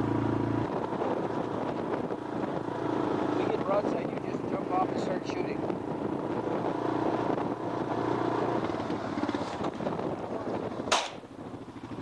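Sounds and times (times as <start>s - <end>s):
vehicle engine running: 0.0s - 12.0s
shotgun shot: 10.9s - 11.2s.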